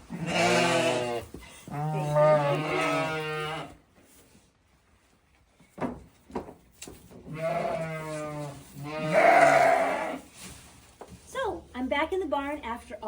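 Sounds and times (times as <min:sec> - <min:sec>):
sheep bleating: 0:00.1 - 0:03.7, 0:07.3 - 0:10.2.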